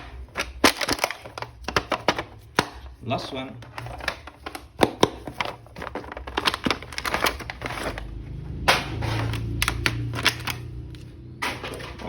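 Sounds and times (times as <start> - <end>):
plastic packaging crinkling: 0.0 - 8.4, 9.0 - 12.0.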